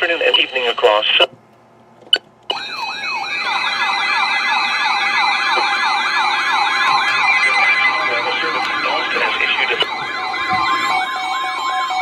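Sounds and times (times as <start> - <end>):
electronic alert tones sweeping: 2.5 - 12.0
steady high tone: 2.5 - 12.0.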